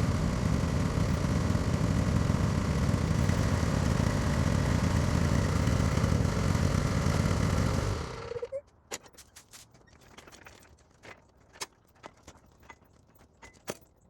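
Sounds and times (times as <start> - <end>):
lawn mower engine running: 0.0 - 8.5.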